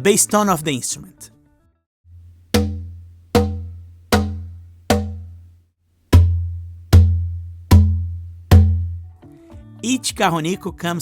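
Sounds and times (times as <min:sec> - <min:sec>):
hand strikes on cajon: 0:02.2 - 0:05.5, 0:06.1 - 0:09.2.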